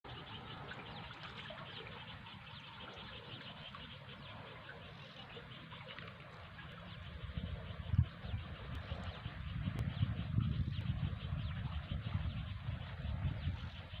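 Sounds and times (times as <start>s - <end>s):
low steady rumble: 6.2s - 14.0s.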